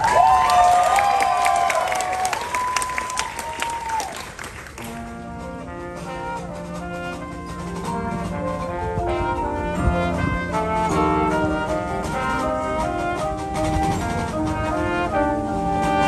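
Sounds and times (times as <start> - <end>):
crowd applause: 0.0 - 5.2
marching band brass chords: 3.8 - 16.0.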